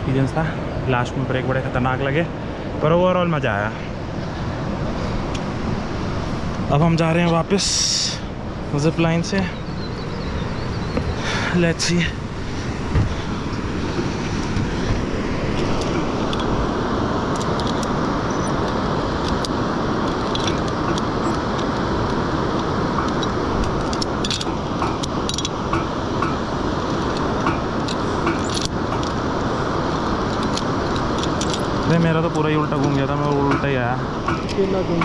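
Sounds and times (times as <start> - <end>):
wind on microphone: 3.9 - 31.9
zip line trolley on cable: 6.2 - 35.0.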